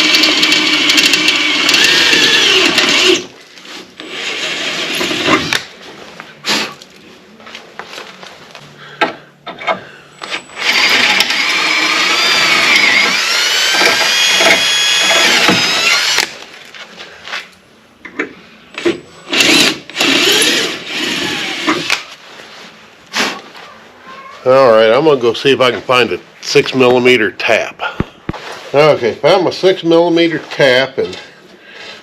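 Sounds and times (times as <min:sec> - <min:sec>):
electric drill drilling metal: 0:00.0 - 0:03.4, 0:04.0 - 0:05.7, 0:10.3 - 0:16.3, 0:19.3 - 0:22.1.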